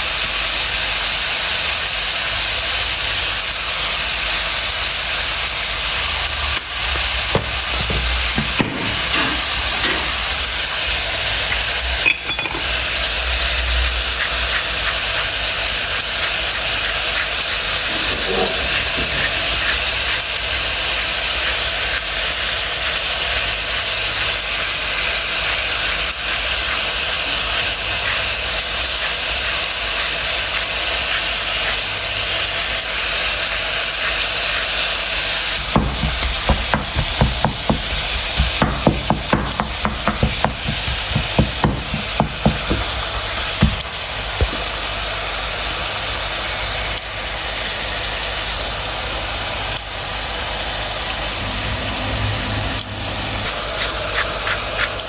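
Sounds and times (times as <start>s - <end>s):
food sizzling in a frying pan: 0.0s - 36.6s
clicks and knocks: 7.0s - 10.4s, 35.7s - 44.6s.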